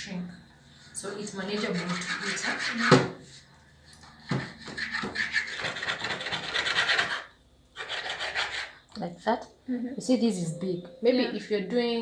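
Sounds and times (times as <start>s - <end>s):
knife sawing through fish: 1.4s - 3.0s, 4.5s - 8.8s.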